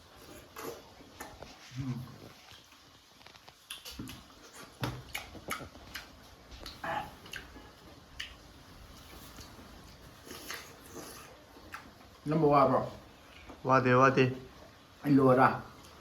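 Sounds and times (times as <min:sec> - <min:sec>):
person chewing food: 0:00.0 - 0:12.2.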